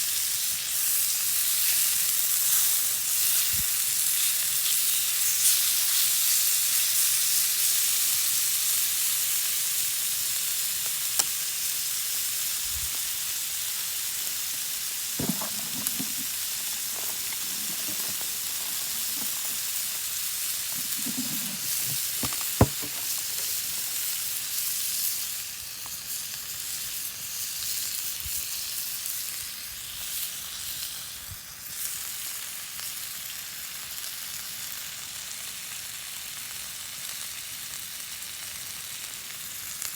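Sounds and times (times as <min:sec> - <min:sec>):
food sizzling in a pan: 0:00.0 - 0:39.9
soft knocks: 0:15.2 - 0:16.3, 0:20.8 - 0:23.2
sharp pops: 0:20.7 - 0:23.9.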